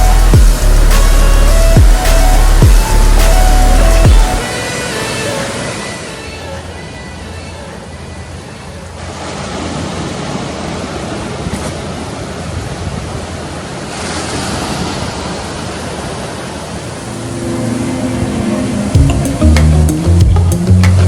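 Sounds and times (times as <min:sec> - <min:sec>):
ocean waves breaking on beach: 0:00.0 - 0:06.9, 0:08.9 - 0:19.4
music: 0:00.0 - 0:07.7, 0:17.0 - 0:21.0.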